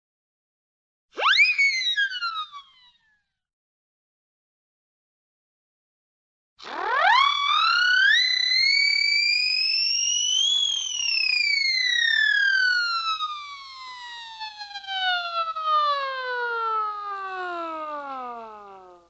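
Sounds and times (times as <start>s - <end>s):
cartoon slipping whistle effect: 1.2s - 3.0s.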